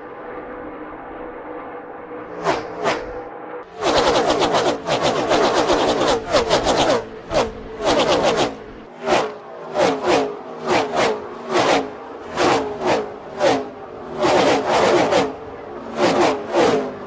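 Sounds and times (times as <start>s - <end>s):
race cars passing by: 0.0s - 17.0s.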